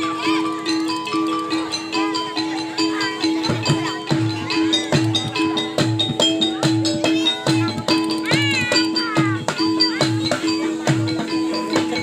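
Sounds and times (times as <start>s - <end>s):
chiming metallophone notes: 0.0s - 12.0s
gamelan music: 0.0s - 12.0s
low drum beat: 3.3s - 12.0s.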